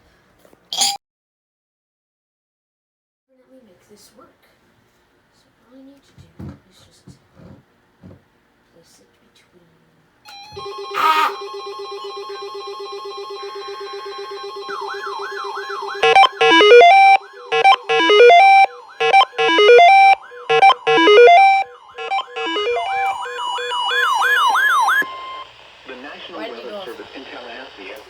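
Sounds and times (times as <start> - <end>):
whooping siren: 14.6 - 25.4
stepped beeps: 16.0 - 25.5.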